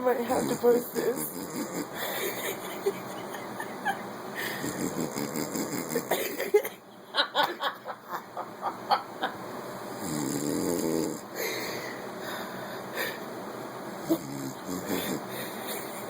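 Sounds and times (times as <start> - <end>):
man snoring: 1.2 - 2.0, 4.5 - 6.2, 10.0 - 11.2, 14.1 - 15.6.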